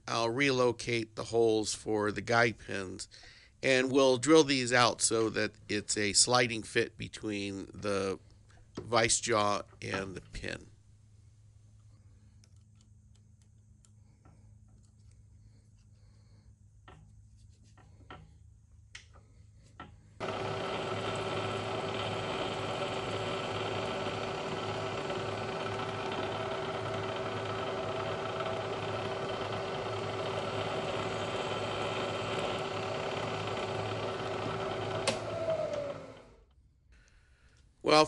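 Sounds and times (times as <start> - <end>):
milling machine spindle running: 20.2 - 36.4.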